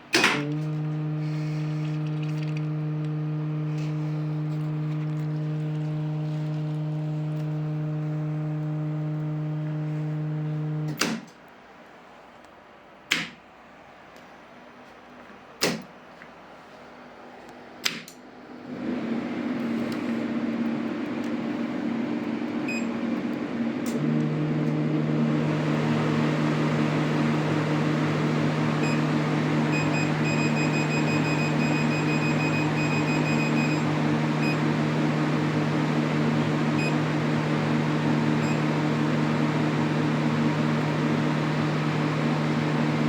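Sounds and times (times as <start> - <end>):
cooling fan whirring: 0.0 - 11.2, 16.4 - 43.0
power supply humming: 0.4 - 10.9.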